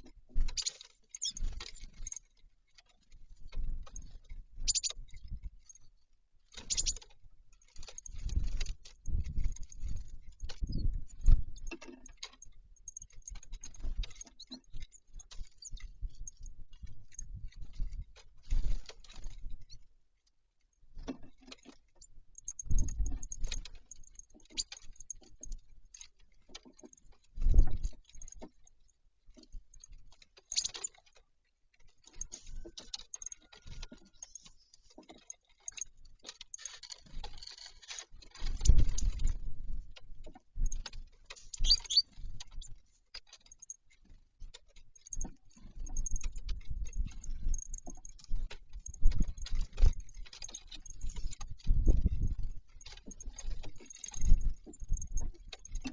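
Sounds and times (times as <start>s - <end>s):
birds pecking and scrabbling: 0.0s - 55.9s.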